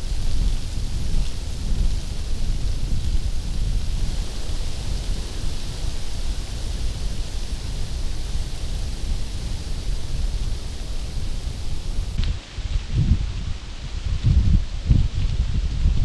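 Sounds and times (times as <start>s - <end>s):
wind buffeting microphone: 0.0s - 12.2s.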